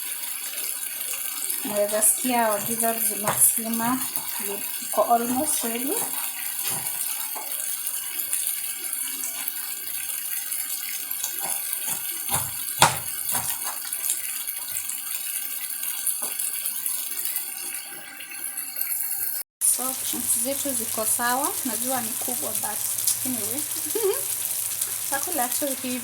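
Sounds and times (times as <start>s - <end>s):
stew sizzling in a pan: 0.0s - 26.0s.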